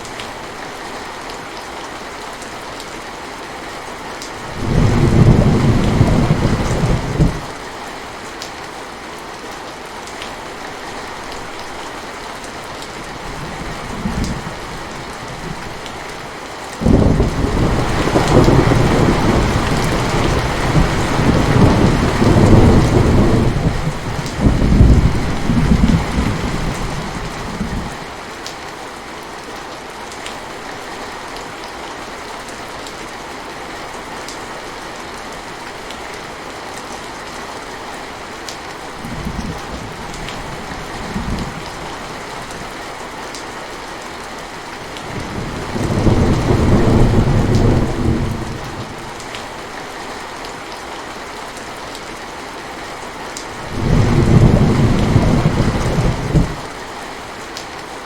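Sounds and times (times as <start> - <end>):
heavy rain falling: 0.0 - 58.0
thunder rumbling: 4.5 - 7.5, 16.8 - 28.0, 45.0 - 49.2, 53.6 - 56.8.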